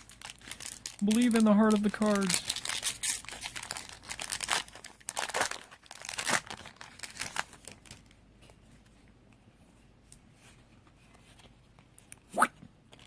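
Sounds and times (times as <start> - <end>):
foil wrapper tearing and crinkling: 0.0 - 8.2.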